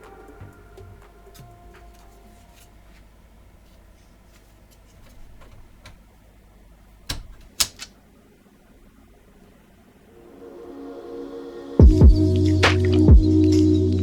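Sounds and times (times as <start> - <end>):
hard parts clicking and tapping: 7.1 - 8.0.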